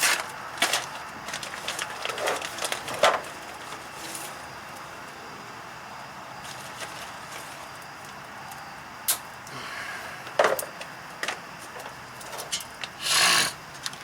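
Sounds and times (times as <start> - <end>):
clicks and rattles of tools: 10.3 - 13.0.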